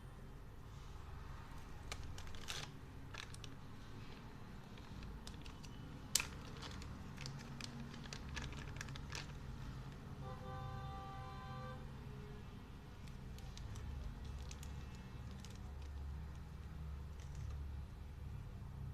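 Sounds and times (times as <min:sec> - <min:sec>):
plastic clicks and crinkles: 0:01.6 - 0:10.0, 0:12.9 - 0:18.0.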